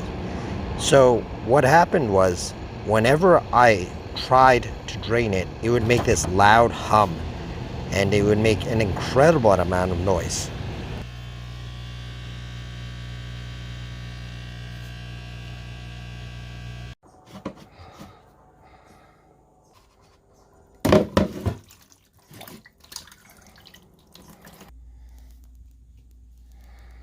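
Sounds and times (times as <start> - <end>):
drain pump humming: 0.0 - 17.0.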